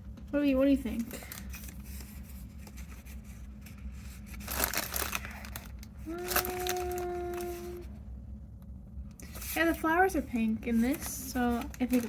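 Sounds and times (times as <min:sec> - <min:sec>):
paper rustling and crinkling: 0:00.9 - 0:07.9, 0:09.2 - 0:12.0.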